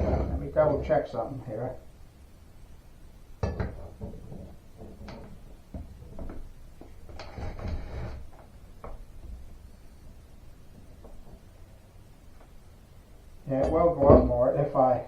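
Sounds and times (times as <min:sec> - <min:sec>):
door plate scraping: 0:07.0 - 0:08.4.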